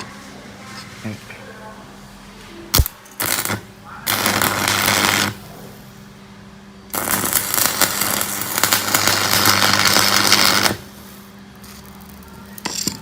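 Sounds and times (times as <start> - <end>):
crackling welding arc: 2.7 - 5.5, 6.9 - 13.0
welding machine humming: 2.7 - 6.2, 6.8 - 13.0.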